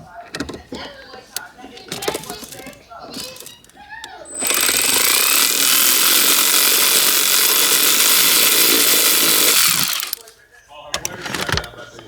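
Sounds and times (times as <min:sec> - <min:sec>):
power tool rushing noise: 0:04.3 - 0:10.3.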